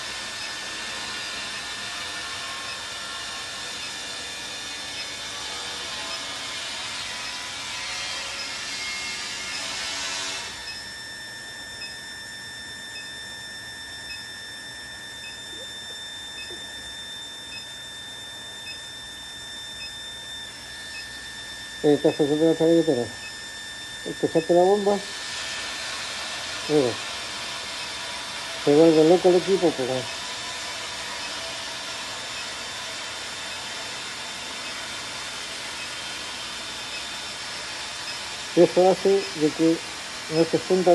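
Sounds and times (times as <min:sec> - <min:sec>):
furnace high-pitched whine: 0:00.0 - 0:40.9
machine hum and hiss: 0:00.0 - 0:40.9
faint high steady tones: 0:10.6 - 0:25.2, 0:26.6 - 0:27.1, 0:27.7 - 0:40.9
person talking: 0:21.8 - 0:23.2, 0:24.1 - 0:25.1, 0:26.7 - 0:27.0, 0:28.7 - 0:30.1, 0:38.6 - 0:40.9.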